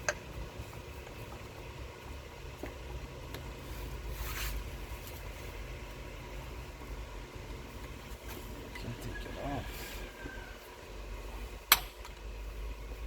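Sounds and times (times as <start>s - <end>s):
steady low hum: 0.0s - 13.0s
scraping rustle: 3.6s - 5.4s.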